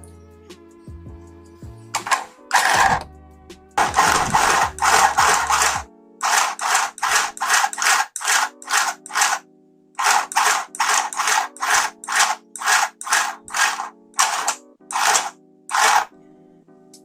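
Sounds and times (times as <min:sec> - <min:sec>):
music with shaker beat and chords: 0:00.0 - 0:02.4.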